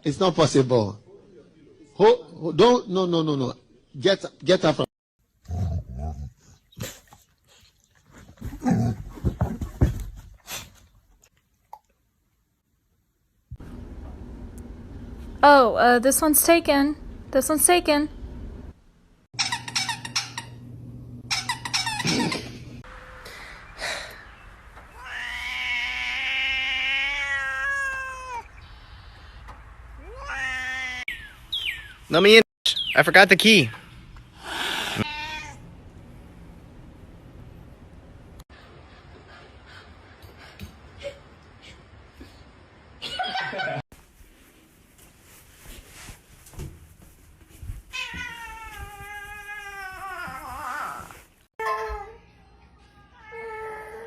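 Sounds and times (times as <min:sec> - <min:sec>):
cat meowing: 0:24.9 - 0:28.6, 0:30.0 - 0:31.1, 0:35.0 - 0:35.6, 0:47.9 - 0:51.1.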